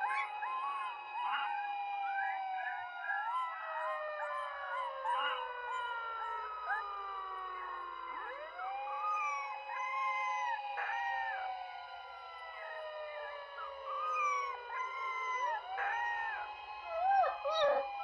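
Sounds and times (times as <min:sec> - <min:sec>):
dogs howling: 0:00.0 - 0:11.8, 0:12.4 - 0:18.0
siren tone sliding down: 0:13.3 - 0:18.0.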